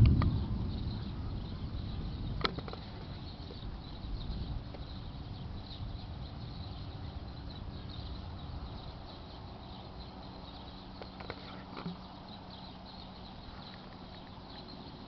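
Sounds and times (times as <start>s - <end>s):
distant thunder rumble: 0.0s - 10.9s
faint high chirping: 0.0s - 15.0s.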